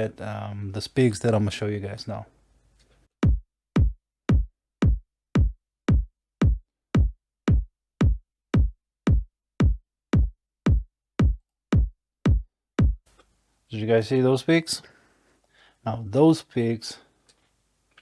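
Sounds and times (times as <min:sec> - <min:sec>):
electronic kick drum beat: 0:03.2 - 0:13.1.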